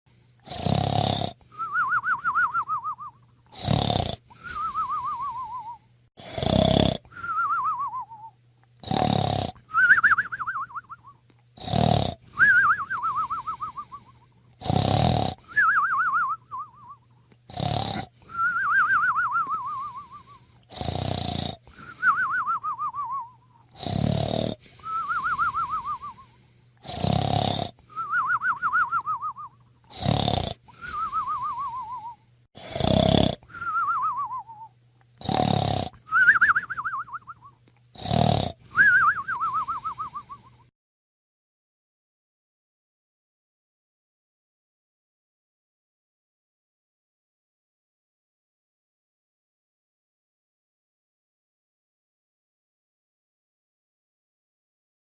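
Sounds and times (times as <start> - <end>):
dog snoring with whistle: 0.4 - 40.7.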